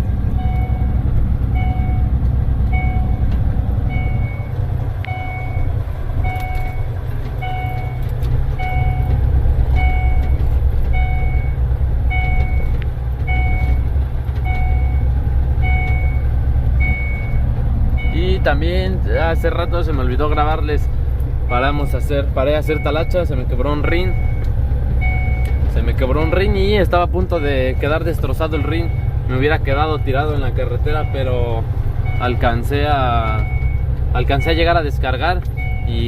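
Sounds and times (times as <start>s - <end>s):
diesel truck engine rumbling: 0.0s - 36.0s
backup alarm beeping: 0.3s - 13.8s, 14.4s - 19.7s, 21.5s - 23.3s, 23.9s - 29.2s, 29.8s - 34.7s, 35.6s - 36.0s.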